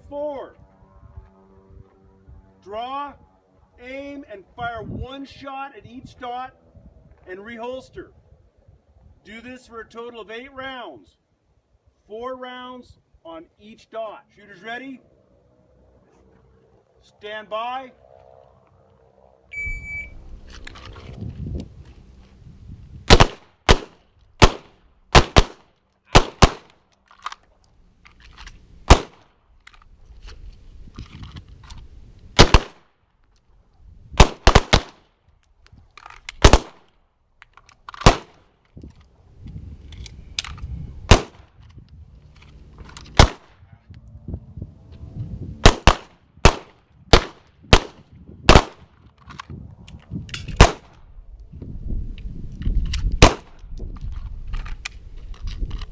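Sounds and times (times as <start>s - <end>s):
handgun shots: 23.1s - 26.8s, 28.9s - 29.3s, 34.2s - 35.0s, 36.3s - 36.9s, 38.0s - 38.4s, 41.1s - 41.4s, 43.2s - 43.6s, 45.6s - 48.9s, 50.4s - 51.0s, 53.2s - 53.6s.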